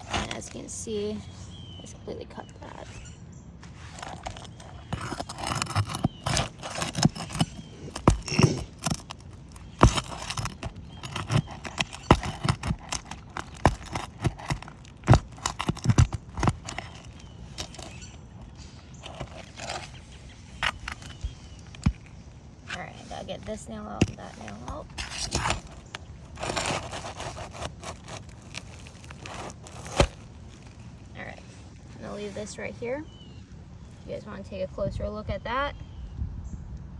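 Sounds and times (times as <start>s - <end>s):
metal tool scraping shingles: 3.6s - 31.0s.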